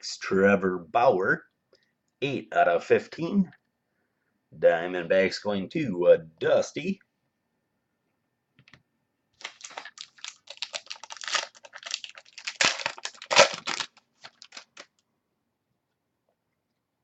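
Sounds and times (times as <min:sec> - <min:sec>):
wrapper tearing and crinkling: 0:09.4 - 0:15.0.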